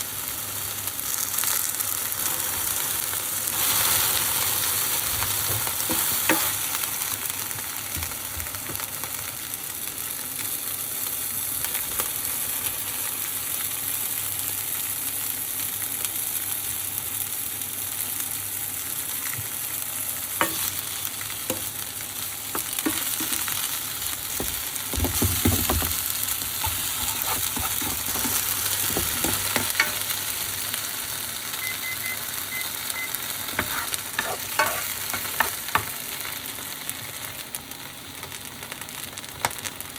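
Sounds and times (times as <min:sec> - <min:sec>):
food sizzling in frying pan: 0:00.0 - 0:39.9
utensil scraping a pan: 0:24.4 - 0:30.1, 0:33.5 - 0:35.6.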